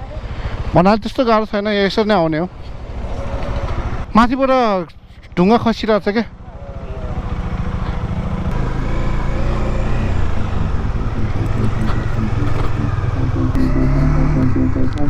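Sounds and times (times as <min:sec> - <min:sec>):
motorcycle engine running: 0:06.9 - 0:15.0.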